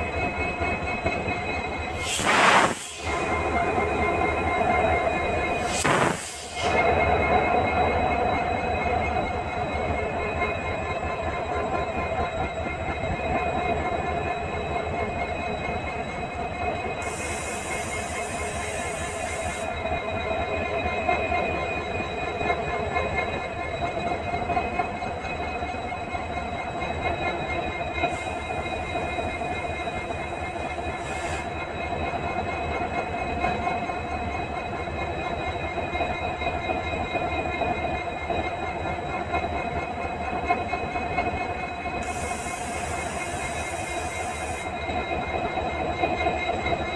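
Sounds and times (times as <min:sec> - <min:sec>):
diesel locomotive engine running: 0:00.0 - 0:46.9
high-pitched hiss: 0:02.0 - 0:03.3, 0:05.6 - 0:06.8.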